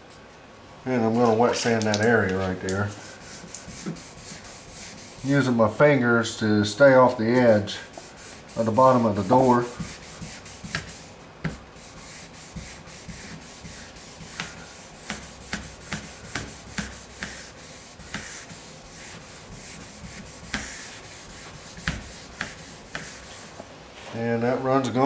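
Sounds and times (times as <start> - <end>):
hand wet sanding: 1.1 - 24.2.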